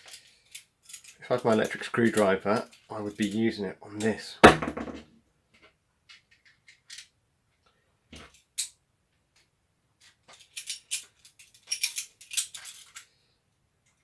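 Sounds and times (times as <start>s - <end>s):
knock: 4.4s - 5.0s.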